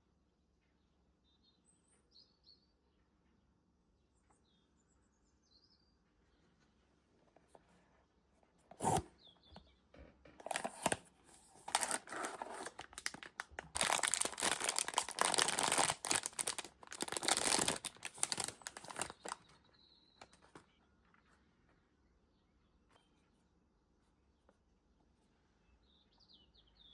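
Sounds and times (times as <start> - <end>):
plastic packaging crinkling and tearing: 10.4 - 19.5.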